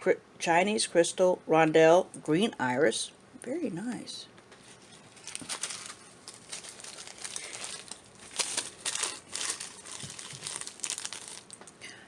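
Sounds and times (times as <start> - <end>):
plastic packets crinkling: 4.9 - 11.7.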